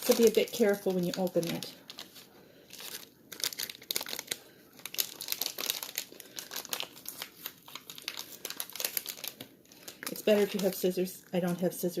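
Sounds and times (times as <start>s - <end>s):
plastic packet crinkling and tearing: 0.0s - 11.6s.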